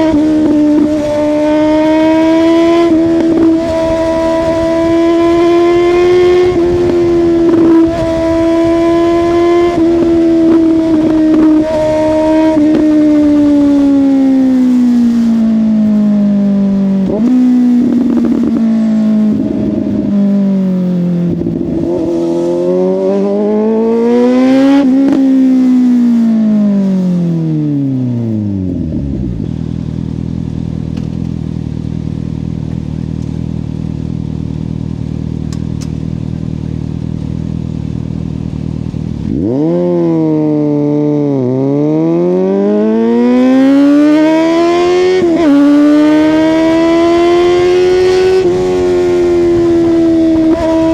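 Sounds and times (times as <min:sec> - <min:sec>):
motorcycle engine revving: 0:00.0 - 0:50.9
motorcycle engine idling: 0:28.6 - 0:39.6.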